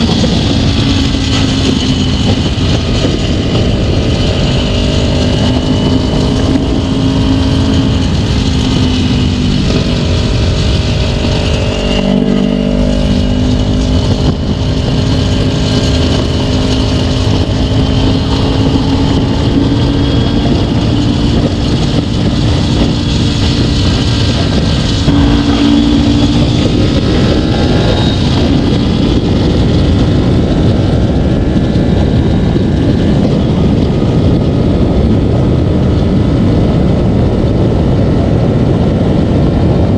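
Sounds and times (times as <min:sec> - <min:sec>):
motorcycle engine at speed: 0:00.0 - 0:39.9
wind noise on microphone: 0:00.0 - 0:39.9.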